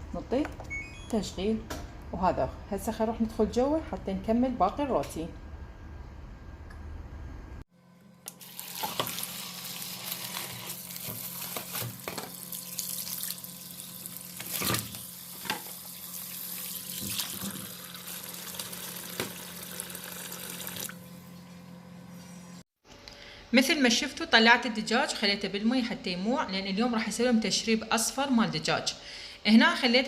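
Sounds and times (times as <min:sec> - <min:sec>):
tap water running into sink: 0:12.7 - 0:21.0.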